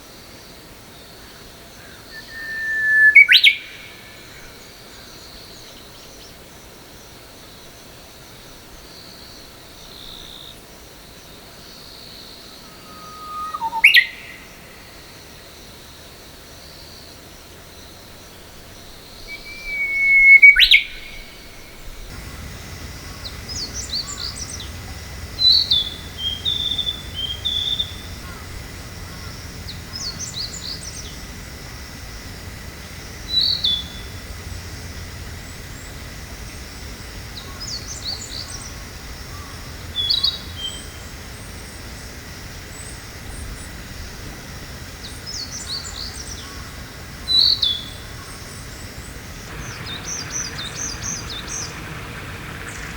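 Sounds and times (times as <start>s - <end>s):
warbler upward whistle: 2.1s - 4.0s, 12.8s - 14.4s, 19.3s - 51.8s
flycatcher singing: 18.8s - 52.9s.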